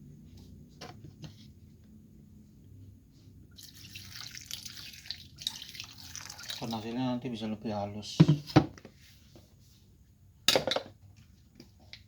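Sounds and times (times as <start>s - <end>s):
water pouring into bowl: 3.6s - 6.8s.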